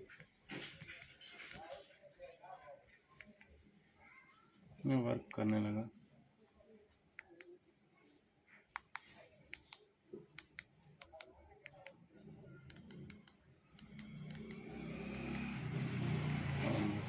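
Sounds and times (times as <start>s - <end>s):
phone keypad buttons clicking: 12.7s - 15.5s.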